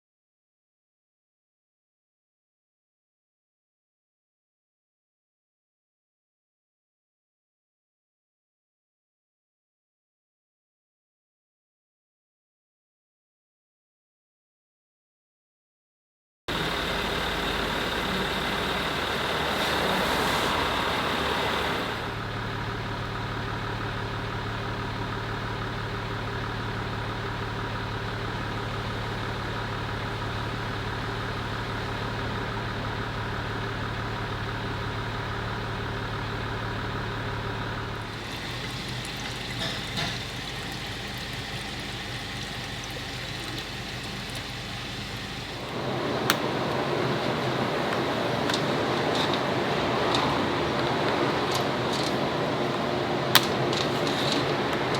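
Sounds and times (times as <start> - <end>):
car engine idling: 16.5 - 54.9.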